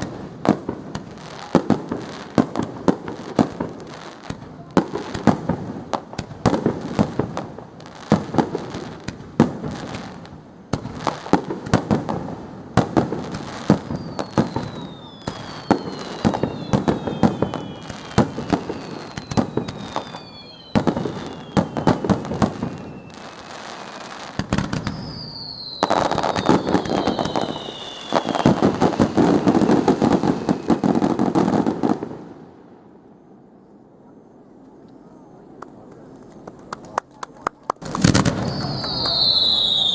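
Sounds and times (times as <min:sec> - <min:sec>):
firework crackle: 0:00.0 - 0:32.6, 0:35.6 - 0:39.9
fireworks bangs: 0:00.0 - 0:33.0, 0:34.4 - 0:39.9
falling firework whistles: 0:12.8 - 0:32.3, 0:38.0 - 0:39.9.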